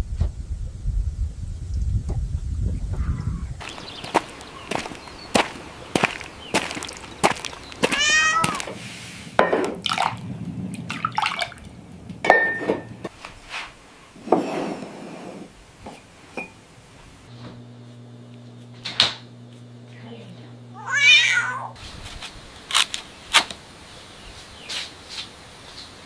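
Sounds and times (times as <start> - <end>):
steady low hum: 0.0 - 13.1, 16.6 - 20.9
cat meowing: 7.9 - 8.7, 20.8 - 21.8.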